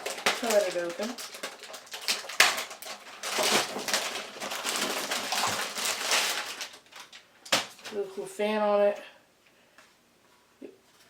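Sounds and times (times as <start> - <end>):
packaging crackling and rustling: 0.0 - 8.1.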